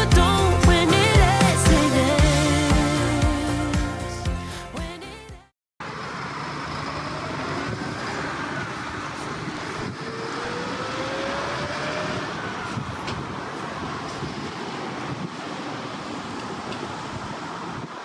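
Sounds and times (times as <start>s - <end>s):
vehicle engine rising in pitch: 5.8s - 17.1s
road traffic noise: 5.8s - 18.0s.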